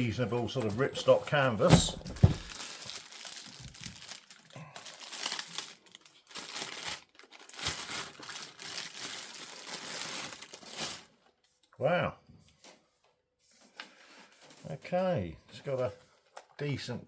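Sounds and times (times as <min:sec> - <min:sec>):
packaging crinkling and rustling: 0:00.5 - 0:11.3
thump: 0:01.7 - 0:02.6.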